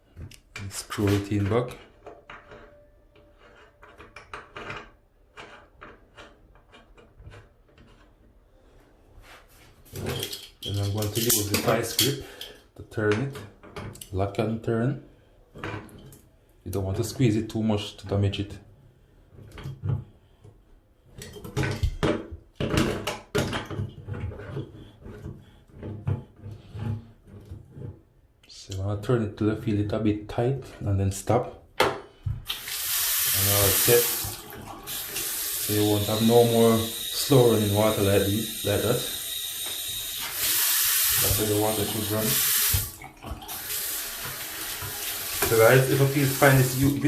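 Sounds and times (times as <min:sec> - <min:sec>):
faucet aerator clicking and scraping: 0:00.6 - 0:08.2, 0:32.5 - 0:47.0.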